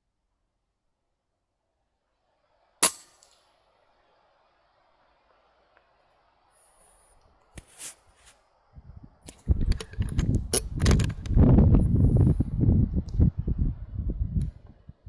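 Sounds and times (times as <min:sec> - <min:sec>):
rubbing and knocking on microphone: 0:09.3 - 0:12.5.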